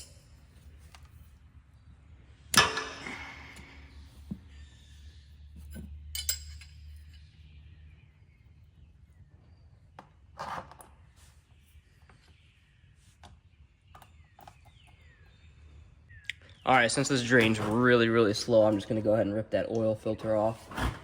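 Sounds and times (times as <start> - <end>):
metal wrenches clanking: 2.5 - 4.4, 5.6 - 7.3.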